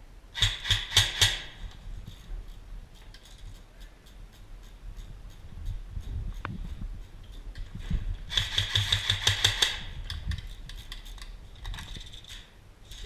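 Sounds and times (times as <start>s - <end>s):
airsoft gun rapid shots: 0.3s - 1.6s, 8.3s - 9.9s.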